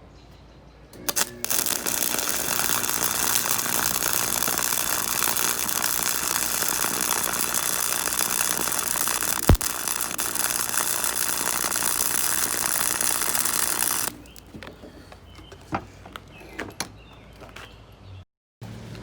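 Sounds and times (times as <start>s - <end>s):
welding arc crackling: 1.0s - 14.5s.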